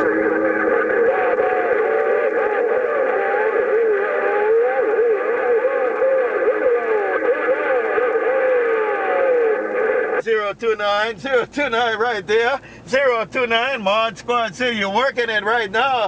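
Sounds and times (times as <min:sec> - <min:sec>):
garbled voice over radio: 0:00.0 - 0:10.2
radio hiss and tone: 0:00.0 - 0:11.0.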